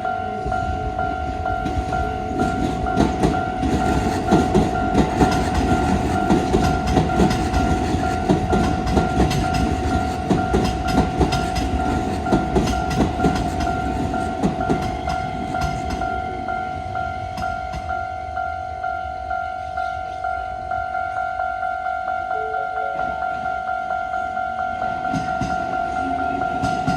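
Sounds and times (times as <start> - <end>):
train rumble: 0.0 - 21.5, 22.9 - 26.9
level crossing warning bell: 0.0 - 26.9
train wheels clattering over joints: 1.6 - 16.2.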